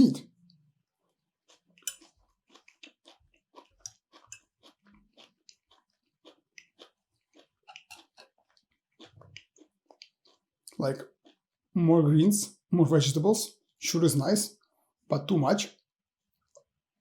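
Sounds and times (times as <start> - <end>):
person chewing food: 0.3 - 11.7, 16.3 - 17.0.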